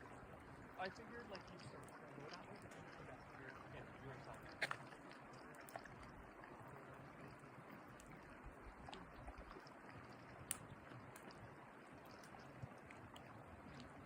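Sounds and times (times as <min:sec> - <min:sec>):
faint outdoor hiss: 0:00.0 - 0:14.0.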